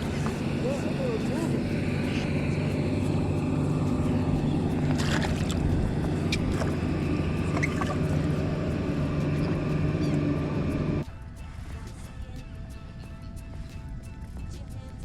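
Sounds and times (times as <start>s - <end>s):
steady engine drone: 0.0s - 14.5s.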